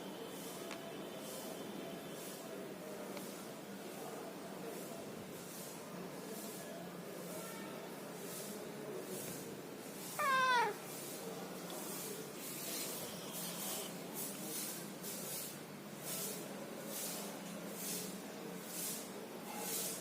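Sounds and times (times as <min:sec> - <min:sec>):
cat meowing: 0:10.2 - 0:10.8.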